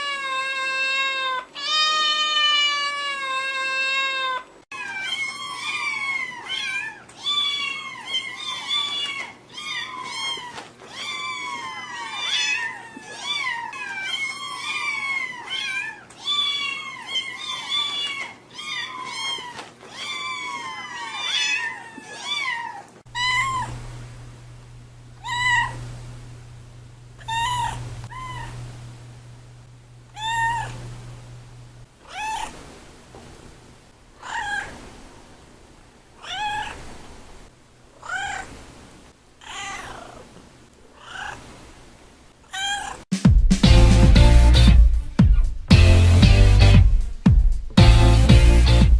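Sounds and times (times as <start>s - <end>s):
cats meowing: 0.0s - 23.8s, 25.2s - 25.8s, 27.2s - 28.7s, 30.1s - 30.9s, 32.0s - 32.6s, 34.2s - 34.9s, 36.2s - 36.9s, 38.0s - 38.6s, 39.4s - 40.3s, 41.0s - 41.5s, 42.5s - 43.1s
low hum: 23.1s - 32.0s.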